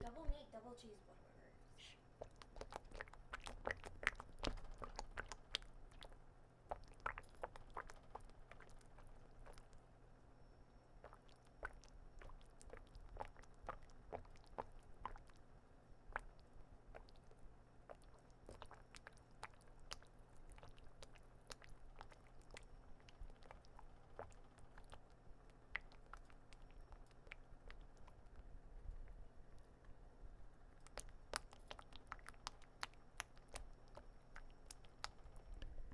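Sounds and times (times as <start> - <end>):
wet squishing: 2.2 - 9.9, 11.0 - 35.8.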